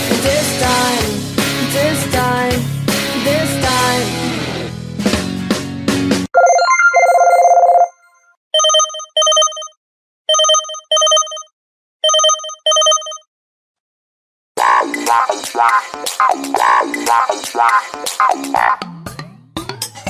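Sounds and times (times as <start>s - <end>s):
phone ringtone: 6.4s - 13.3s.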